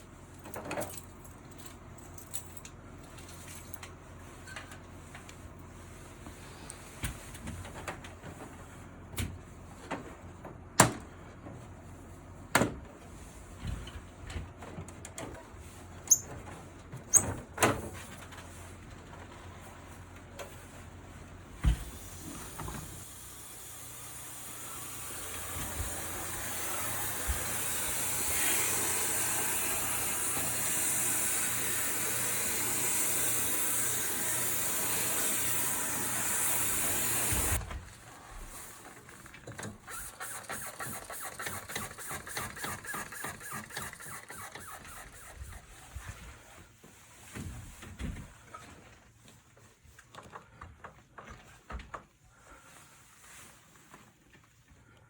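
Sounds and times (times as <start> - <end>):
water jet spraying: 23.1 - 37.6.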